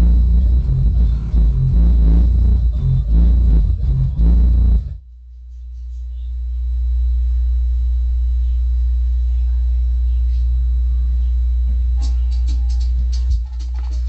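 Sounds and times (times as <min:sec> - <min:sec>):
music beat with high percussion: 0:00.0 - 0:05.0, 0:12.0 - 0:14.0
very deep bass tone: 0:00.0 - 0:14.0.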